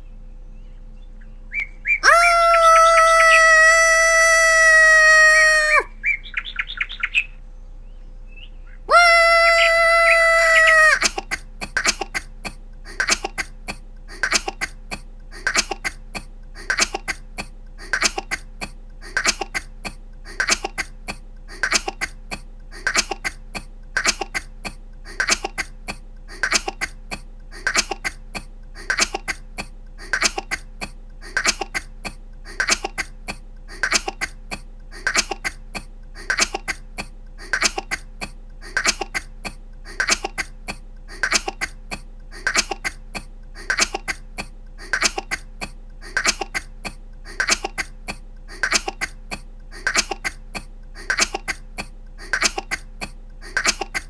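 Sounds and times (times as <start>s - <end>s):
woman coughing: 11.0s - 21.0s, 22.8s - 25.8s, 32.5s - 33.2s, 35.0s - 38.1s, 38.7s - 40.6s, 41.2s - 48.0s, 48.6s - 52.9s, 53.5s - 54.0s.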